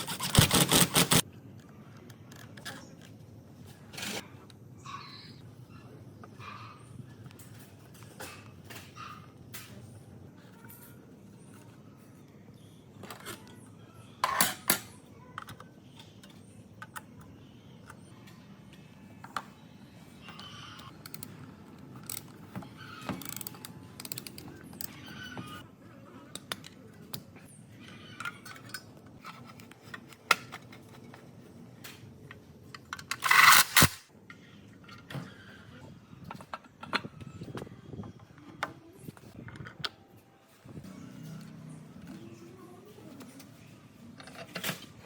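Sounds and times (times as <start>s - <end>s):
metal tools clinking: 33.1s - 34.0s.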